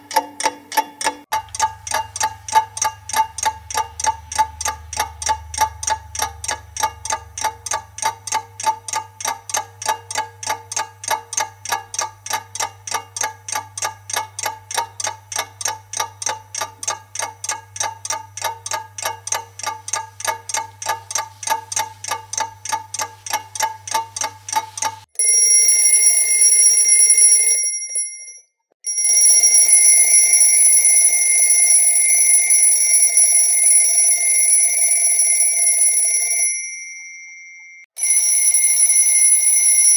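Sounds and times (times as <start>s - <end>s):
clock ticking fast: 0.0s - 27.4s
alarm clock bell ringing: 25.2s - 39.9s.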